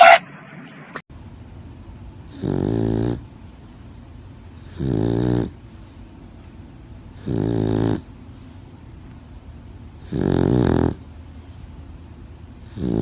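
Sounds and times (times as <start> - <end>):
loud snoring: 2.3 - 3.2, 4.6 - 5.6, 7.2 - 8.1, 10.0 - 11.0, 12.7 - 13.0
quiet breathing: 8.1 - 9.1, 11.2 - 13.0.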